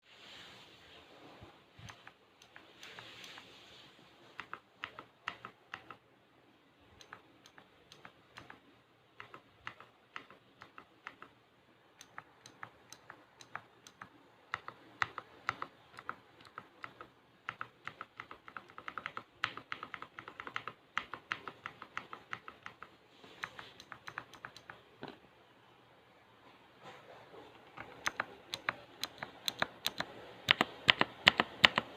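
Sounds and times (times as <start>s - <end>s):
mechanical keyboard switch clicks: 27.8s - 31.9s.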